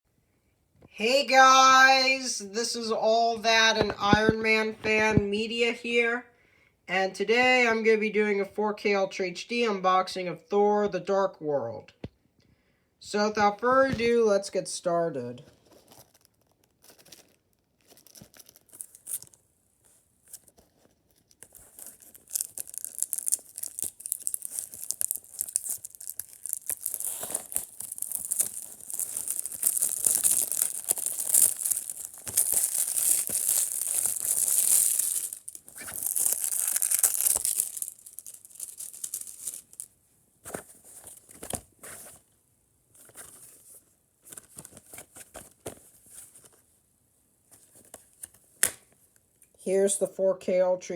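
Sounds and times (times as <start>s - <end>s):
clicks and knocks handling case: 3.7s - 5.3s
plastic wrap crinkling and tearing: 15.5s - 19.4s, 20.3s - 39.9s.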